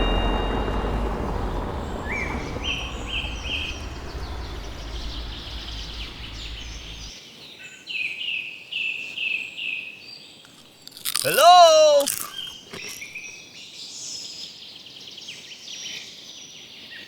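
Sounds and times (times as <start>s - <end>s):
low rumble: 0.0s - 7.1s.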